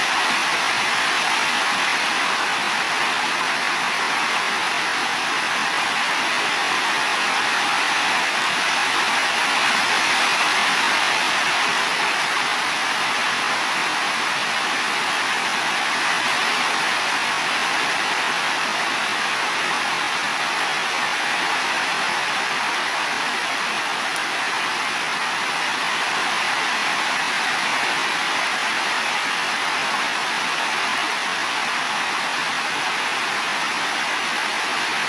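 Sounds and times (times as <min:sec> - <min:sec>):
heavy rain on roofs: 0:00.0 - 0:35.0.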